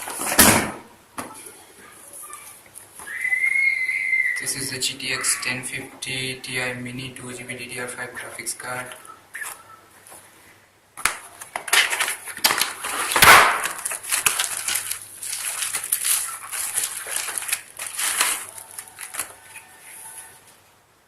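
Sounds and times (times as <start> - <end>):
cardboard and plastic crackling: 11.0 - 20.3.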